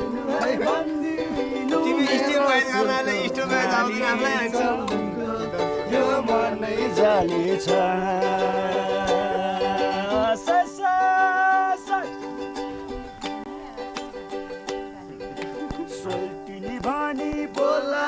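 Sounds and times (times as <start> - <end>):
person singing: 0.0 - 18.0
plucked ukulele: 0.0 - 18.0.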